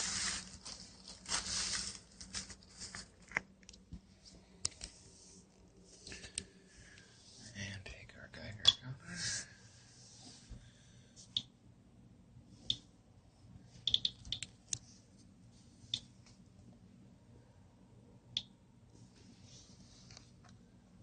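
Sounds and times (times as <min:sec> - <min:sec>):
geiger counter clicking: 0:13.8 - 0:14.5.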